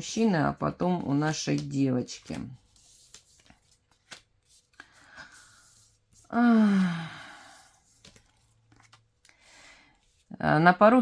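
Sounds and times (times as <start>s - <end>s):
woman sighing: 6.3s - 7.7s
faint rustles and clicks: 7.4s - 10.3s.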